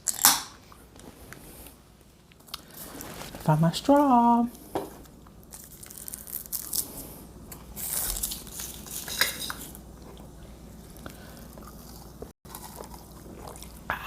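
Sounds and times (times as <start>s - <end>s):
biting and chewing: 7.7s - 13.9s.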